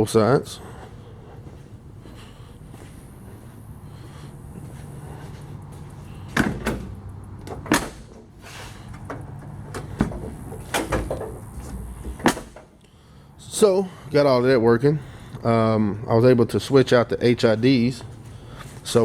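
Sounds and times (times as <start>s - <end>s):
low steady hum: 0.0s - 19.0s
car door thumping shut: 6.3s - 8.3s, 9.0s - 12.7s
car door latches clacking: 6.3s - 12.8s.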